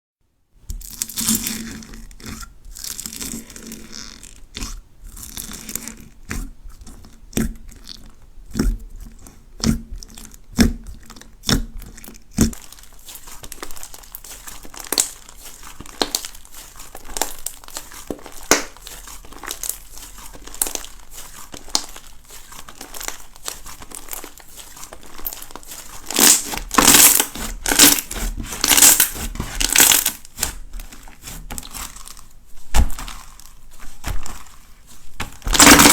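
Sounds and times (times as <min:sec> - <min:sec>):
crunchy slime crackling: 0:09.9 - 0:35.9.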